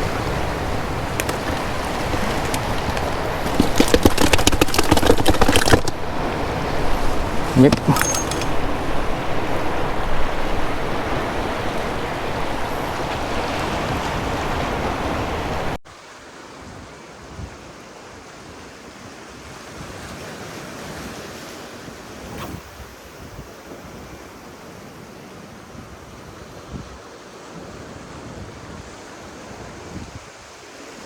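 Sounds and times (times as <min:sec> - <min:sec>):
wind buffeting microphone: 0:00.0 - 0:15.8
surf washing on shore: 0:00.0 - 0:31.0.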